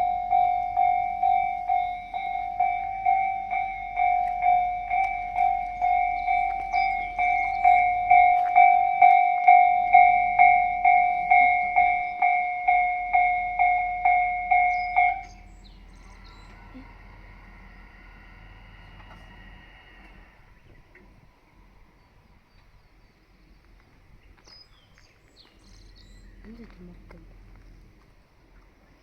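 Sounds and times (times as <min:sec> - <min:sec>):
level-crossing alarm bell ringing: 0:00.0 - 0:20.4.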